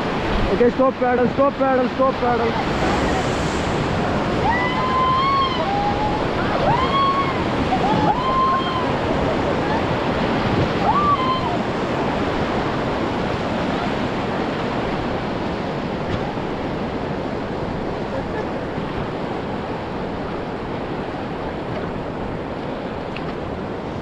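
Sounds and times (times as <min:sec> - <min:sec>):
white water rushing: 0:00.0 - 0:24.0
wind on microphone: 0:02.1 - 0:24.0.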